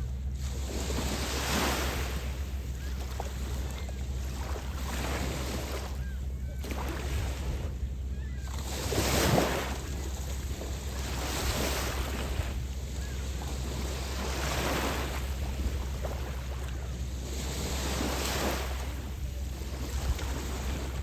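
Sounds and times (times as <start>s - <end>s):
small waves washing onto beach: 0.0s - 21.0s
wind rumble on microphone: 0.0s - 21.0s.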